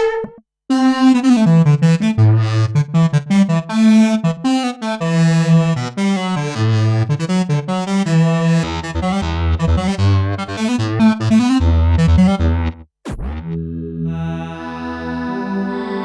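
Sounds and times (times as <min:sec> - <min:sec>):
synthesizer notes: 0:05.7 - 0:15.0.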